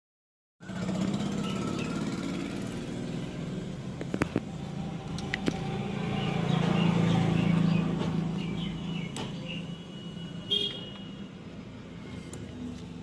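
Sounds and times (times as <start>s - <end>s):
motorcycle engine running: 0.6s - 8.7s.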